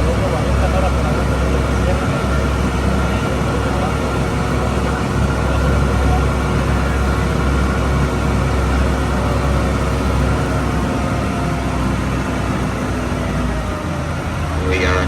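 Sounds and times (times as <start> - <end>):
boat engine humming: 0.0 - 15.0.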